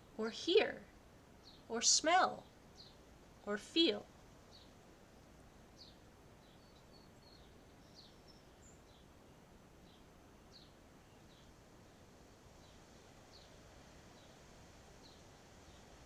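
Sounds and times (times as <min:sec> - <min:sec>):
quiet outdoor hiss: 0:00.0 - 0:16.0
faint bird chirps: 0:05.8 - 0:12.0.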